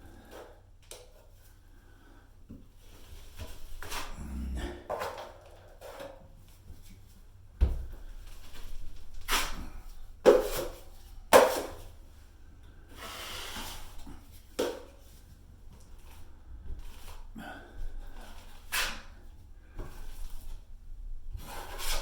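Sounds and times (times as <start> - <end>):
drywall knife scraping: 3.3 - 6.2, 9.2 - 11.9, 12.9 - 14.2, 18.2 - 20.4, 21.3 - 22.0.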